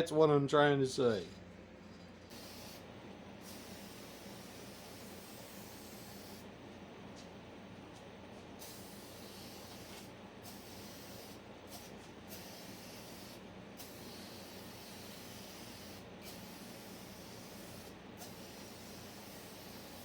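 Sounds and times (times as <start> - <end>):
spray-paint can hissing: 2.3 - 2.8, 3.4 - 6.5, 8.6 - 20.0.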